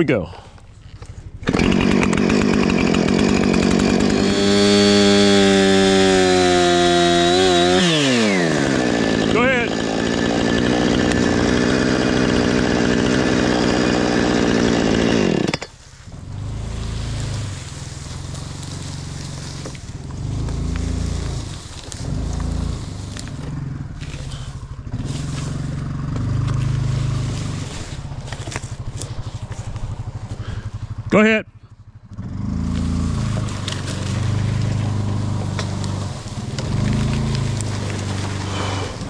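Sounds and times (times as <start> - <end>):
chainsaw cutting wood: 1.4 - 30.7, 32.2 - 39.0
utility vehicle engine revving: 1.4 - 31.1, 31.8 - 39.0.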